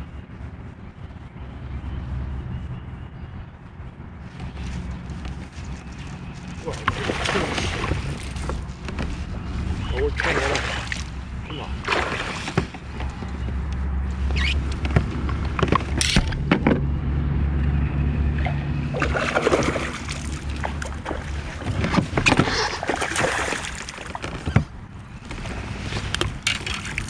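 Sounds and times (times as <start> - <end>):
water splashing: 5.8 - 8.8, 9.7 - 13.4, 18.4 - 24.6, 25.3 - 27.0.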